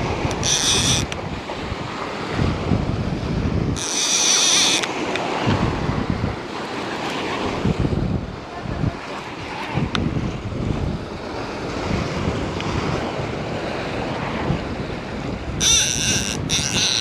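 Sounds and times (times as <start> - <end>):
wind buffeting microphone: 0.0 - 17.0
short high-pitched buzzes: 15.6 - 17.0.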